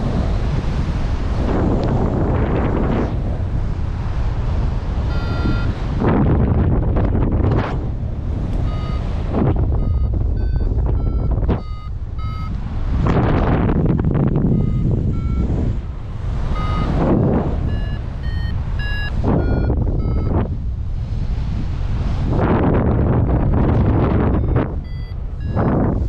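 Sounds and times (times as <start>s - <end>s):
wind over microphone: 0.0s - 26.0s
variometer beeping: 5.0s - 6.0s, 8.5s - 20.9s, 23.5s - 26.0s.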